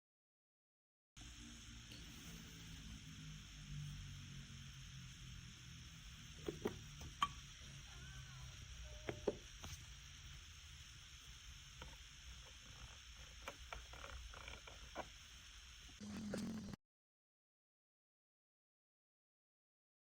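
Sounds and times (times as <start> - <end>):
faint steady hiss: 1.2 - 16.8.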